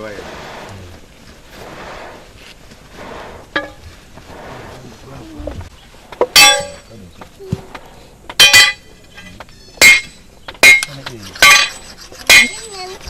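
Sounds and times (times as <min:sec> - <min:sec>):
metal striking metal ringing: 0:06.3 - 0:07.0, 0:08.4 - 0:12.7.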